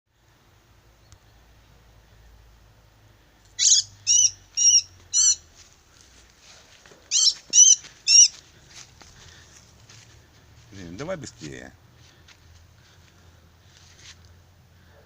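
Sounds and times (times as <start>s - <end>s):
bird shrill cries: 3.6s - 5.4s, 7.1s - 8.3s.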